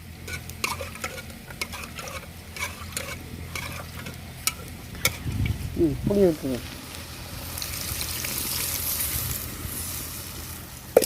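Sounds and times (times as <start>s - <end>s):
fish frying in oil: 0.0s - 5.3s, 6.2s - 11.0s
spoon scraping in a pan: 0.2s - 5.4s.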